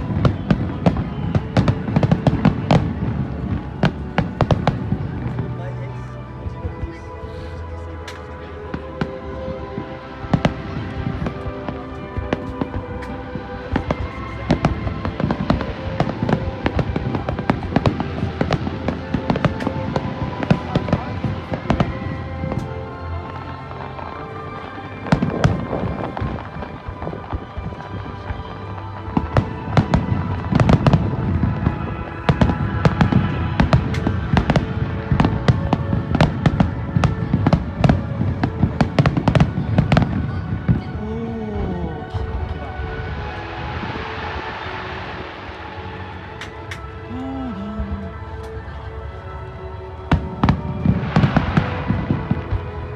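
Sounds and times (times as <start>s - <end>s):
fireworks bursting: 0.0s - 5.6s, 7.6s - 48.2s, 50.1s - 52.9s.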